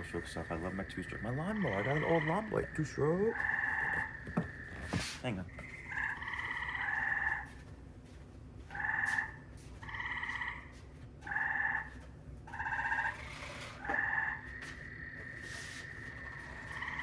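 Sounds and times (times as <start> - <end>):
frog calling: 0.0 - 7.6, 8.7 - 17.0.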